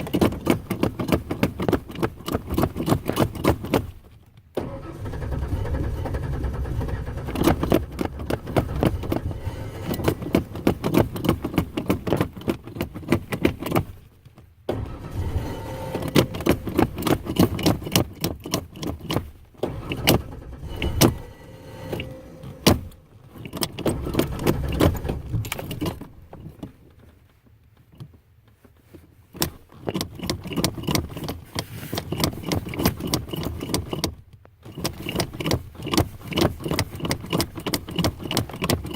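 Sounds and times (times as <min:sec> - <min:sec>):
engine cranking by starter: 0:04.6 - 0:13.8, 0:14.7 - 0:26.9, 0:30.0 - 0:38.9.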